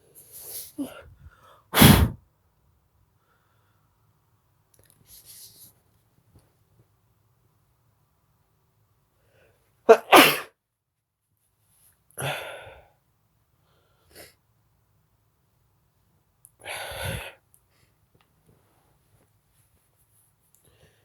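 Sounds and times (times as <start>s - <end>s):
person sneezing: 1.8s - 2.2s, 9.9s - 10.5s.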